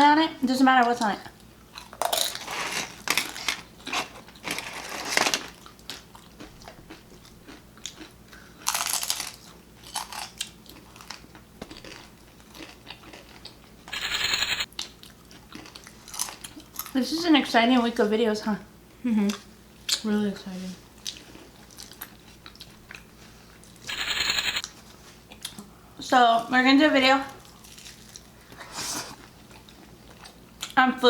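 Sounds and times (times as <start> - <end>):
crunchy food being chewed: 1.7 - 17.0, 21.0 - 25.6, 27.4 - 30.8.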